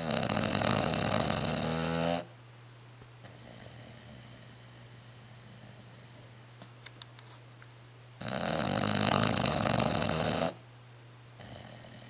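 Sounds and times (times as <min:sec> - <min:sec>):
dog snoring: 0:00.0 - 0:02.3, 0:03.2 - 0:06.4, 0:08.2 - 0:10.6, 0:11.4 - 0:12.0.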